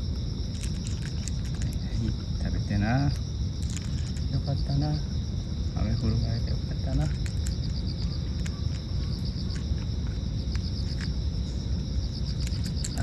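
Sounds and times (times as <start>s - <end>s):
crickets chirping: 0.0s - 13.0s
wind rumble on microphone: 0.0s - 13.0s.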